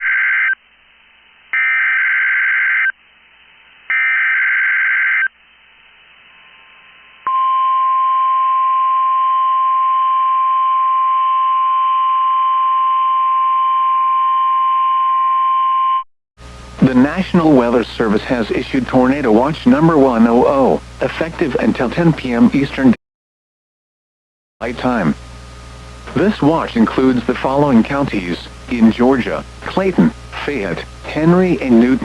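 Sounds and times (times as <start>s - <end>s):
harsh buzzing data bursts: 1.5s - 3.0s.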